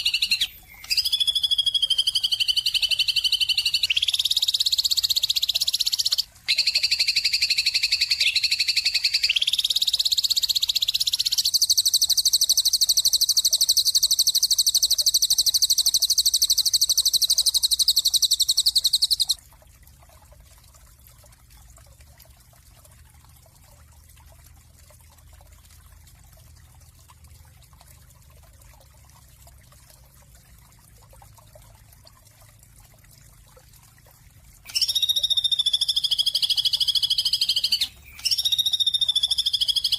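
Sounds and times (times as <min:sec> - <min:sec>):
bird trilling: 0:00.0 - 0:09.8, 0:34.7 - 0:39.9.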